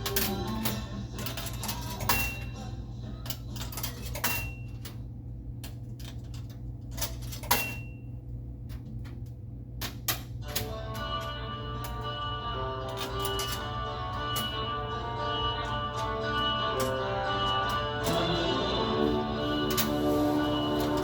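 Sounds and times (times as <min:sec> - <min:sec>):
metallic clicks and clatter: 0:00.0 - 0:02.6, 0:03.2 - 0:07.9
low machine hum: 0:00.0 - 0:21.0.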